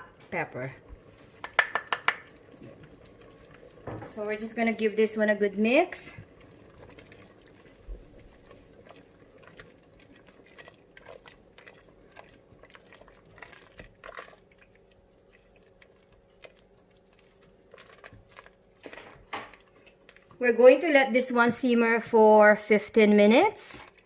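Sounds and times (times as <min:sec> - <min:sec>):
wet squelching porridge: 0:00.6 - 0:24.0
utensil scraping and tapping pot: 0:01.4 - 0:02.3.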